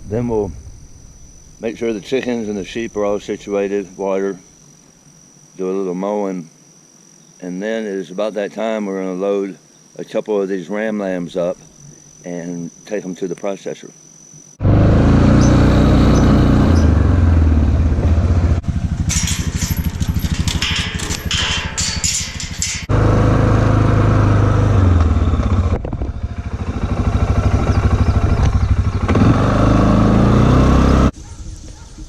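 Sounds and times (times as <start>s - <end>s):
engine running: 14.6s - 31.1s
loud rattling clatter: 18.6s - 23.0s.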